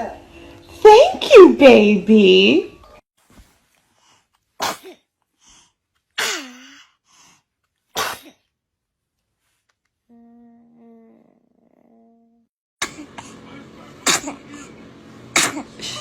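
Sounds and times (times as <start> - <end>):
baby sneezing: 4.6 - 5.1, 6.2 - 6.9, 8.0 - 8.5, 12.8 - 13.1, 14.0 - 14.7, 15.4 - 16.0.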